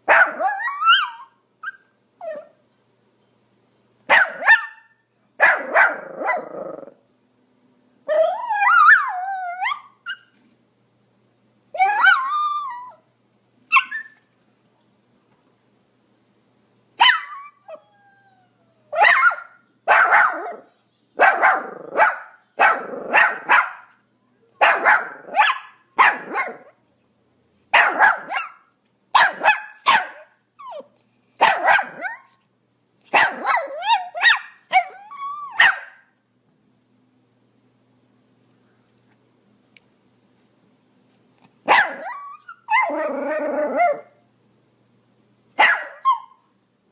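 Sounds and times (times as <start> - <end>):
small dog barking: 0.0 - 1.3, 4.1 - 6.6, 17.0 - 17.5, 18.9 - 24.0, 24.6 - 26.8, 27.7 - 30.8, 31.4 - 32.3, 33.1 - 36.1, 41.6 - 43.1, 45.6 - 46.4.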